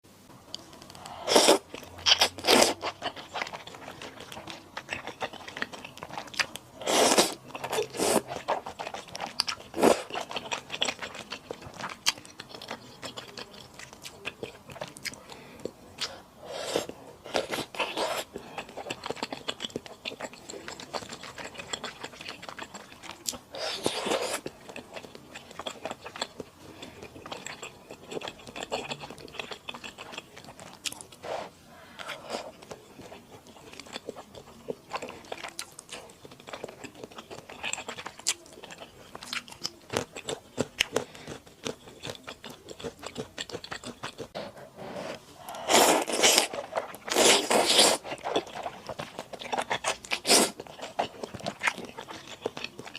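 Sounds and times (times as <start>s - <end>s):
chewing and biting: 0.6s - 16.2s, 16.8s - 31.2s, 32.0s - 44.5s, 45.4s - 52.9s
slurping noodles: 44.3s - 48.8s, 49.9s - 50.6s.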